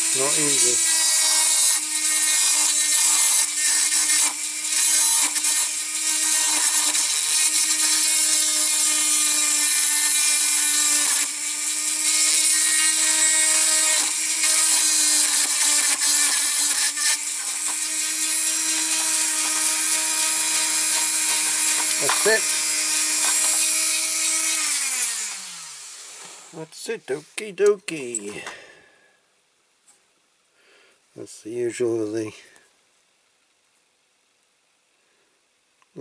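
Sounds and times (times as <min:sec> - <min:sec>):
rotary tool grinding metal: 0:00.0 - 0:26.6.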